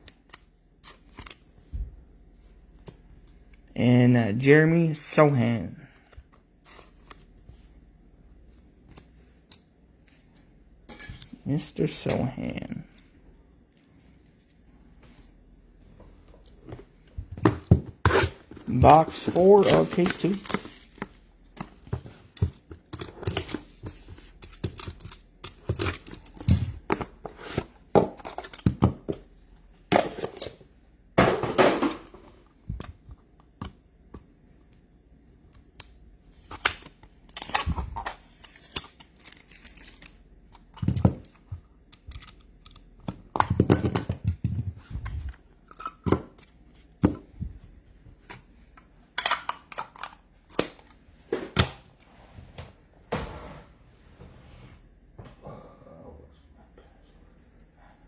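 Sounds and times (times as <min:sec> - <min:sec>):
wrapping tearing and crinkling: 0:37.4 - 0:40.3.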